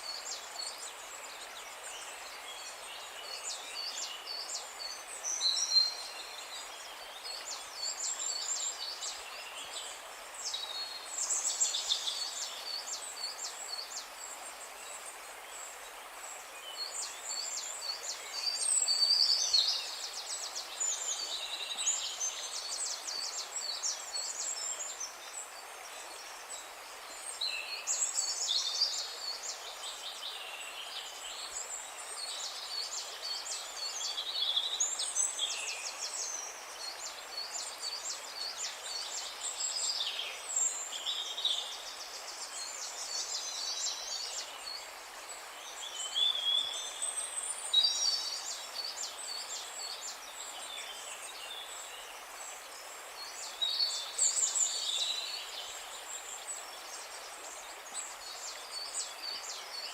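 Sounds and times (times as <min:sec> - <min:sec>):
faint steady hiss: 0:00.0 - 0:59.9.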